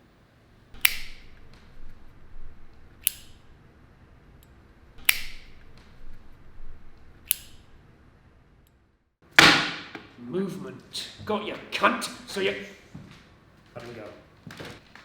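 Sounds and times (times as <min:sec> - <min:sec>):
faint low hum: 0:00.0 - 0:08.9
sharp ringing clicks: 0:00.8 - 0:03.6, 0:05.0 - 0:07.8.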